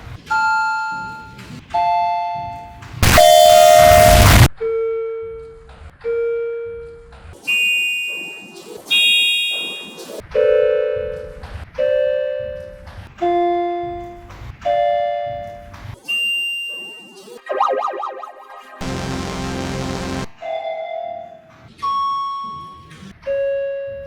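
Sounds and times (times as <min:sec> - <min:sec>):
electronic elevator chime: 0:07.6 - 0:10.0.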